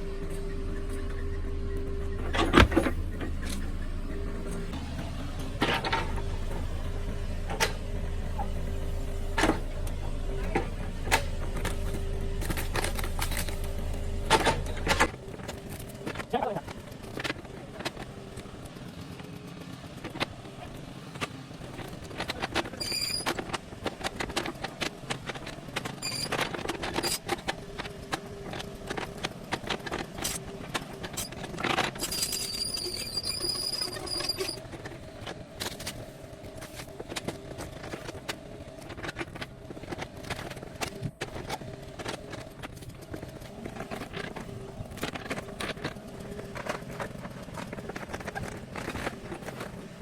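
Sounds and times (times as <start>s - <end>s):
excavator engine running: 0.0s - 50.0s
high-pitched metal squeals: 32.0s - 34.6s.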